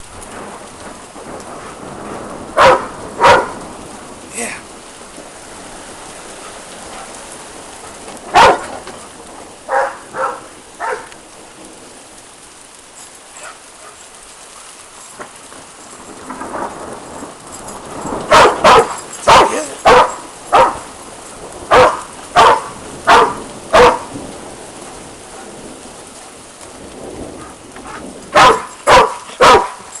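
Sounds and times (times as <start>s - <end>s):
hail and rain falling: 0.0s - 30.0s
dog barking: 2.6s - 3.6s, 7.9s - 8.8s, 9.7s - 11.1s, 13.4s - 14.0s, 18.3s - 20.9s, 21.7s - 24.2s, 27.9s - 30.0s.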